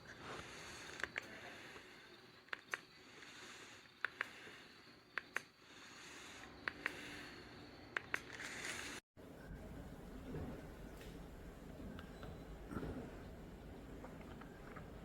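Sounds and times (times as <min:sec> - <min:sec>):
sharp clicks in pairs: 0:02.5 - 0:03.3, 0:04.0 - 0:05.5, 0:06.6 - 0:07.2
ceiling fan running: 0:06.0 - 0:15.0.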